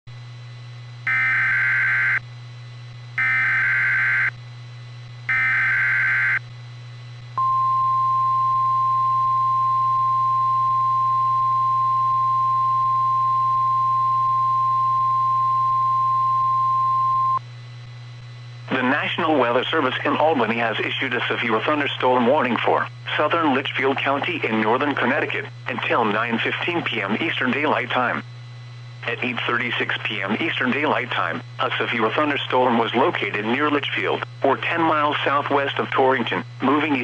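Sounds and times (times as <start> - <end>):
low steady hum: 0.1 - 37.0
steady warning alarm tone: 1.1 - 2.2, 3.2 - 4.4, 5.3 - 6.4.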